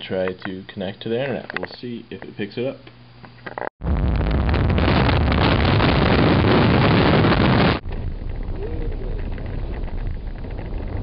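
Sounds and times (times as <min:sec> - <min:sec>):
wind buffeting microphone: 0:03.8 - 0:11.0
low vehicle rumble: 0:07.8 - 0:11.0.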